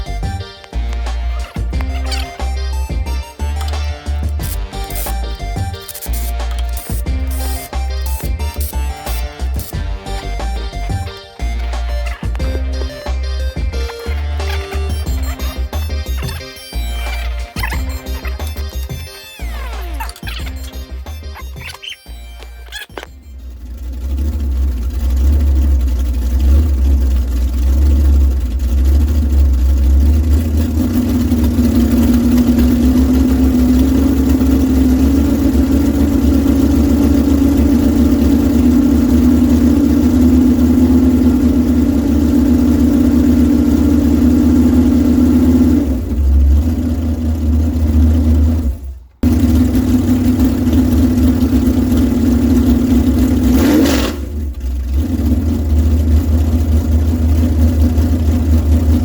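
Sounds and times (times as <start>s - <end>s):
engine running steadily: 0.0s - 59.0s.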